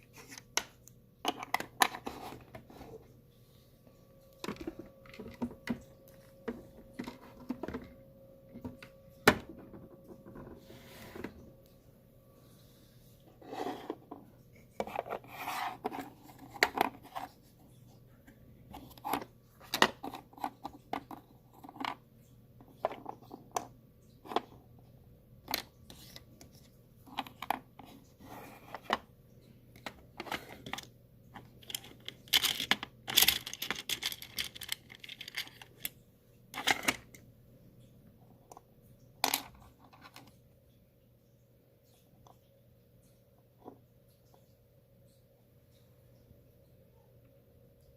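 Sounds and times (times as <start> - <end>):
faint steady hum: 0.0 - 47.9
plastic toy pieces clicking: 31.6 - 35.9.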